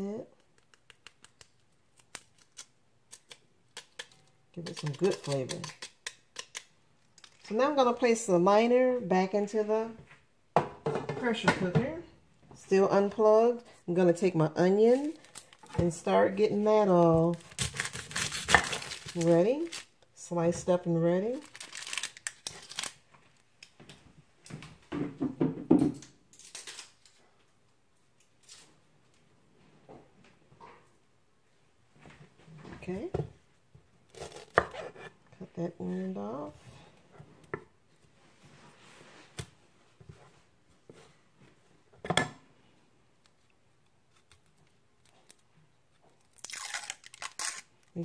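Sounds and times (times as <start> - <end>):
onion rustling: 14.6 - 19.9, 21.2 - 23.1, 46.2 - 48.0
knocks on kitchen counter: 24.9 - 26.0.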